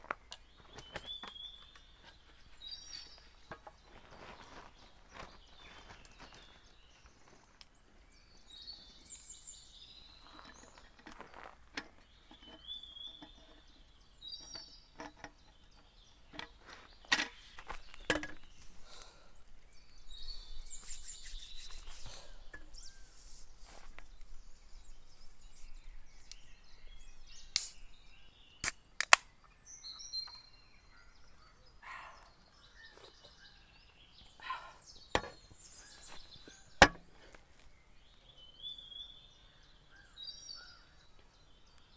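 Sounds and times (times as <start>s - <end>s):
birds chirping: 0.0s - 41.9s
sharp clicks and knocks: 14.4s - 18.6s, 35.2s - 37.3s
sharp cracks: 28.6s - 29.4s.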